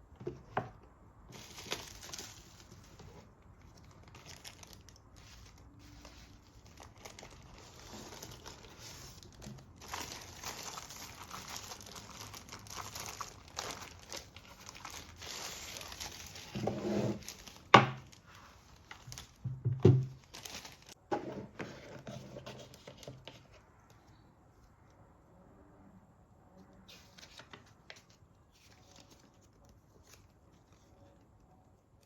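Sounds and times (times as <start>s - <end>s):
packaging crinkling and rustling: 1.3s - 21.0s.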